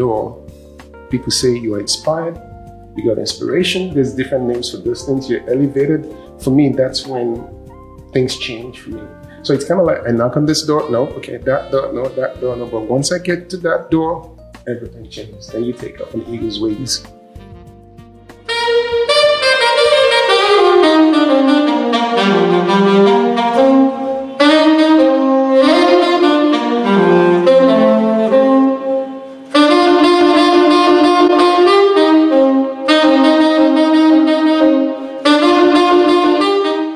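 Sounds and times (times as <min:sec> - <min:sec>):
solo jazz horn: 0:10.6 - 0:13.5, 0:15.4 - 0:36.9.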